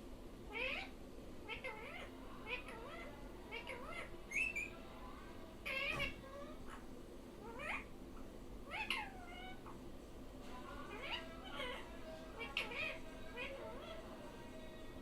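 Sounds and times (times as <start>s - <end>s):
parrot mimicking meows: 0.5s - 4.7s, 5.6s - 6.8s, 7.4s - 7.9s, 8.6s - 9.8s, 10.9s - 14.1s.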